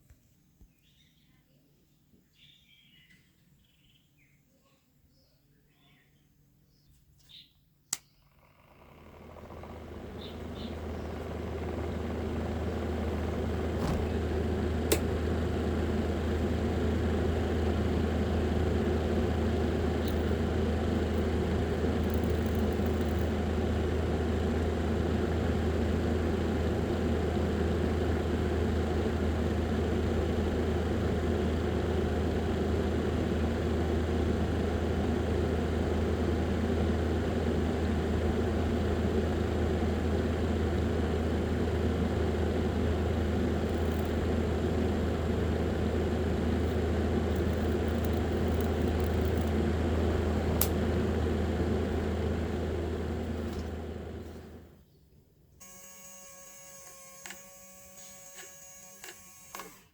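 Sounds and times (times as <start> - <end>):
sharp click: 7.9 - 8.2
electric fan motor humming: 8.3 - 54.8, 55.6 - 59.9.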